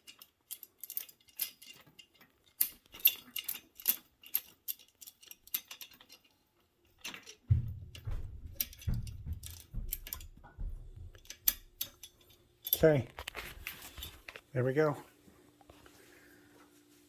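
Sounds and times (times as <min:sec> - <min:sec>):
allen wrench metal clicks: 0:00.0 - 0:07.4, 0:08.0 - 0:10.4, 0:11.1 - 0:14.4
low rumble: 0:07.5 - 0:11.6.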